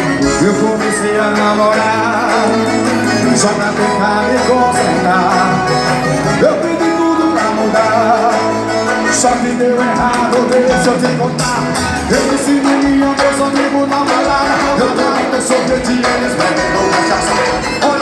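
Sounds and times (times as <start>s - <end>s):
live band playing amplified music: 0.0s - 18.0s.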